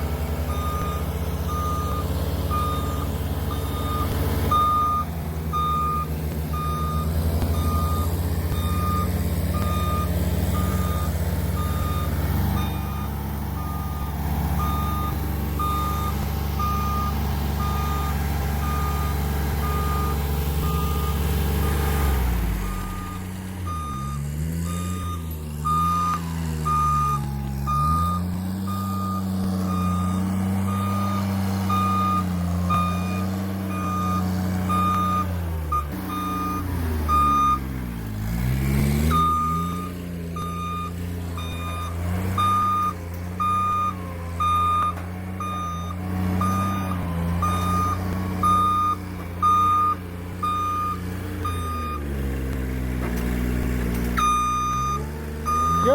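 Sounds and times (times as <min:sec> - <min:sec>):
engine running: 0:00.0 - 0:55.9
warning alarm beeping: 0:54.2 - 0:55.9.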